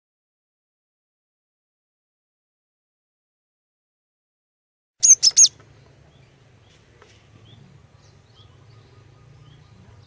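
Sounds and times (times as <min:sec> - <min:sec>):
bird high call notes: 0:05.0 - 0:06.3, 0:07.4 - 0:10.0
faint bird chirps: 0:05.0 - 0:10.0.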